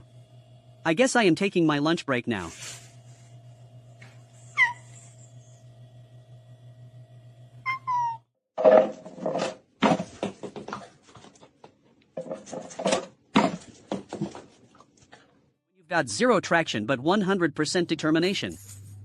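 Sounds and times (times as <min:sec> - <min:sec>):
falling squeak: 0:04.5 - 0:05.1, 0:07.6 - 0:08.3.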